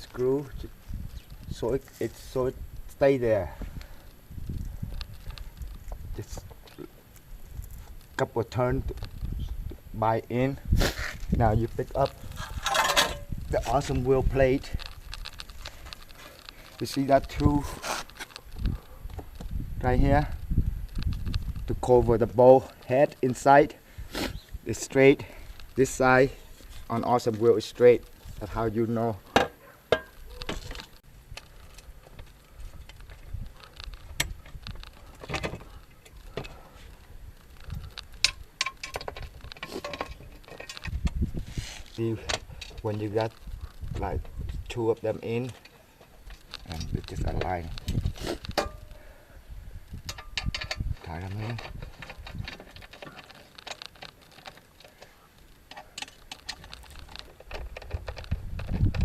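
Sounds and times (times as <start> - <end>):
metal hardware clicking: 12.0 - 14.0, 50.0 - 58.4.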